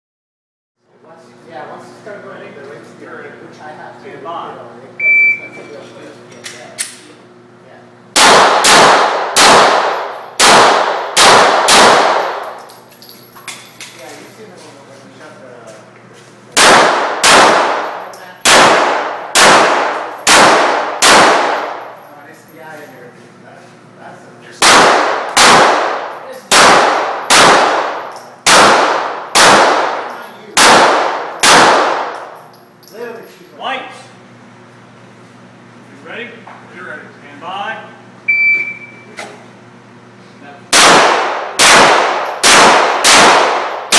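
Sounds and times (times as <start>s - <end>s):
pistol shots echoing: 8.2s - 12.6s, 16.6s - 21.9s, 24.6s - 32.4s, 40.7s - 43.9s.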